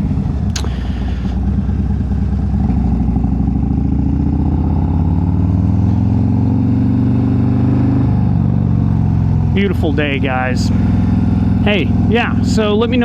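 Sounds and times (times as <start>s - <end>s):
motorcycle engine running: 0.0s - 13.0s
short click: 0.5s - 0.8s.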